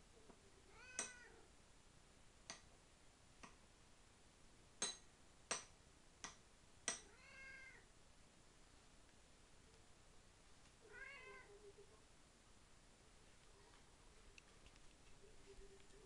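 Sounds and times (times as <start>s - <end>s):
cat meowing: 0.7s - 1.4s, 7.1s - 7.8s, 10.8s - 11.6s.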